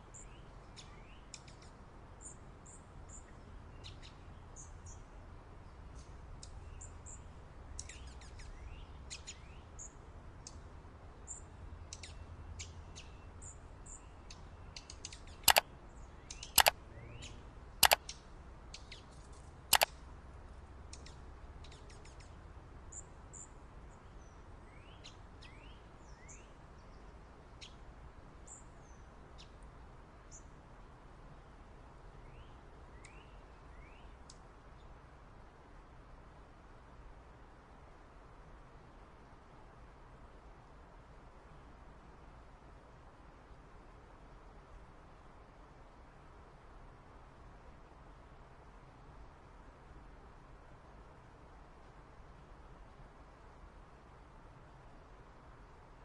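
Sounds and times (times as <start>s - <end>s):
small birds chirping: 15.0s - 16.7s, 17.8s - 18.0s.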